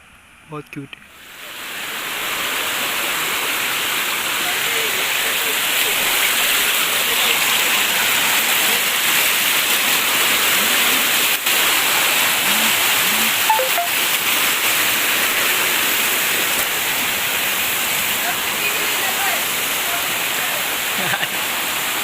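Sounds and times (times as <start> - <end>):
water rushing: 1.1 - 22.0
faint short chirps: 13.5 - 13.9.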